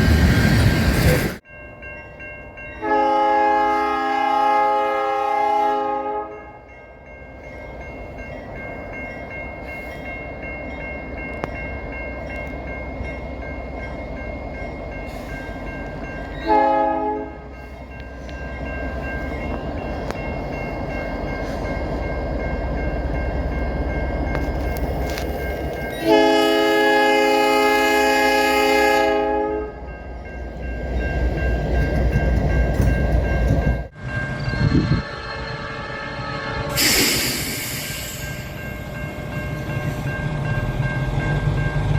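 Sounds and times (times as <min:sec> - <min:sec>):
freight train rumble: 0:00.0 - 0:41.9
locomotive horn blasts: 0:02.8 - 0:06.6, 0:16.4 - 0:17.6, 0:25.9 - 0:29.9.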